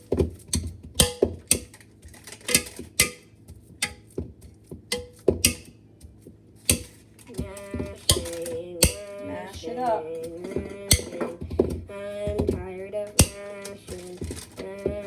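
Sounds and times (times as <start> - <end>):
masher knocking mixing bowl: 0.0 - 5.8, 6.7 - 15.0.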